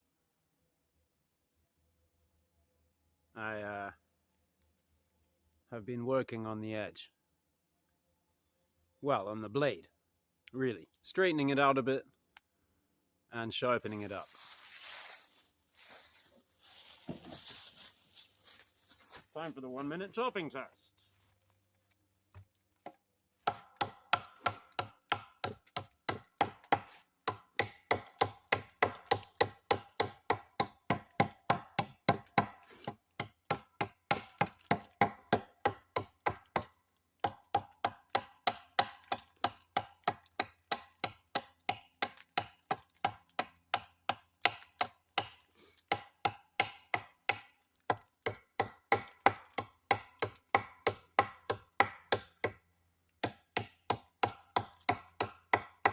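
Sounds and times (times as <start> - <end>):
knife chopping into wood: 22.8 - 52.6, 53.2 - 55.9.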